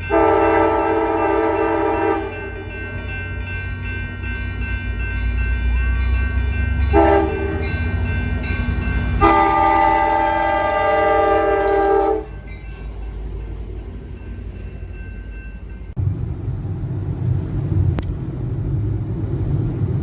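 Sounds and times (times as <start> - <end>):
train horn blasts: 0.0 - 2.7, 6.8 - 7.9, 9.0 - 12.4
low rumble: 15.8 - 20.0.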